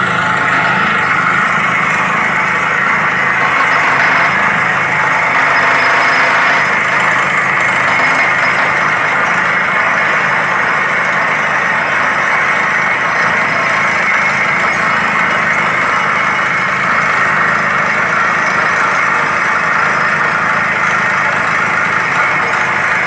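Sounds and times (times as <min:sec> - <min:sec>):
drilling rig engine running: 0:00.0 - 0:23.0.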